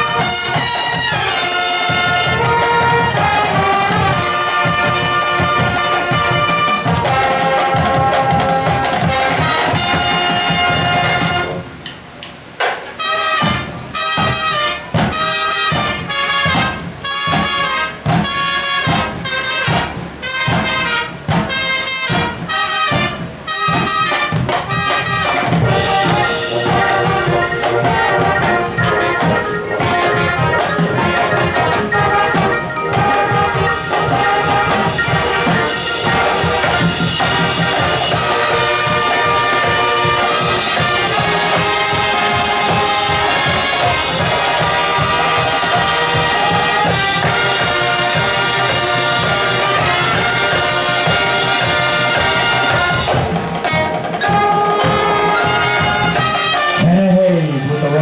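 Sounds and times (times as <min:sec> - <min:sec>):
marching band playing: 0:00.0 - 0:58.0.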